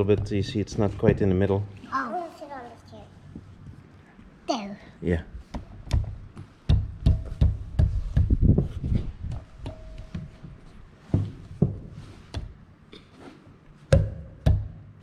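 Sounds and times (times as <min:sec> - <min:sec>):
dull thumps: 0:05.5 - 0:12.6.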